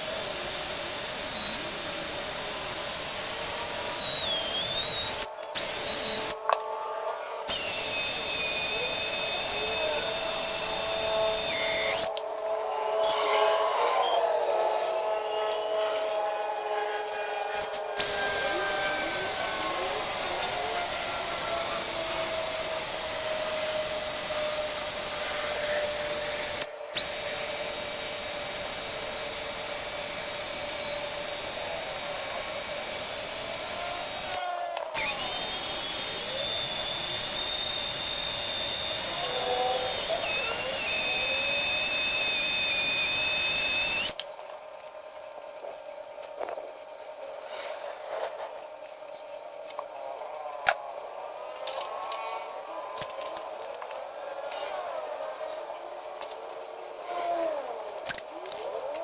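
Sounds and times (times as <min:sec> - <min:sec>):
power tool high whine: 0:00.0 - 0:06.5, 0:07.5 - 0:12.1, 0:12.8 - 0:44.2.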